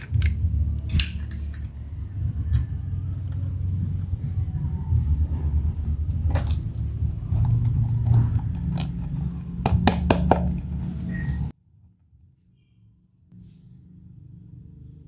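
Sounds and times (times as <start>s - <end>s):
steady low rumble: 0.0s - 11.5s.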